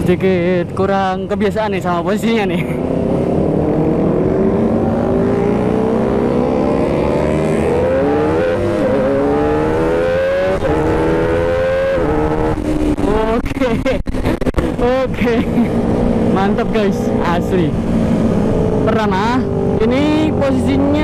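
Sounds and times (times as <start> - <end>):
motorcycle engine accelerating: 2.6 - 21.0.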